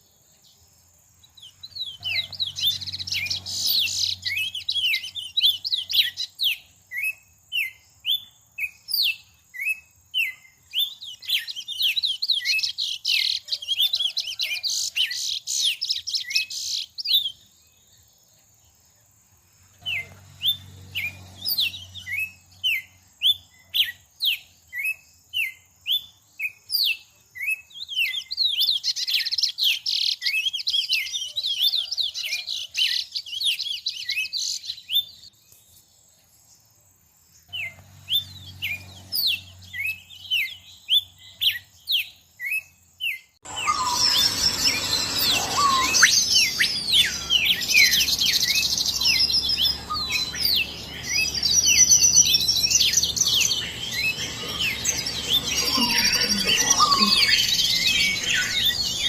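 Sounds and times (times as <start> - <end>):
songbird whistling notes: 1.4 - 17.4, 37.5 - 59.0
rapid high twittering: 43.4 - 59.0.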